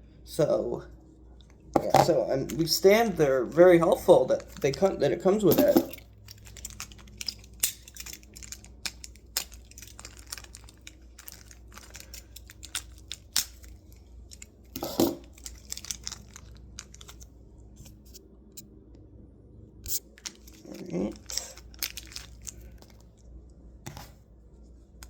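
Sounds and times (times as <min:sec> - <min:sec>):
plastic packaging crinkling: 0:02.5 - 0:18.1, 0:19.9 - 0:23.2
louder handling noise: 0:05.4 - 0:13.7, 0:14.3 - 0:15.5.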